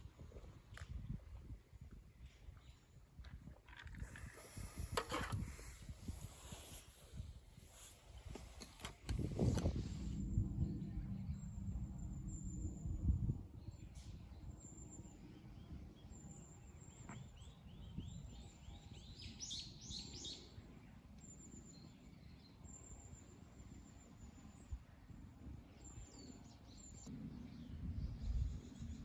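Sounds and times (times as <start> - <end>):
low wind rumble: 0.0 - 21.1, 23.4 - 29.0
wild birds singing: 9.4 - 29.0.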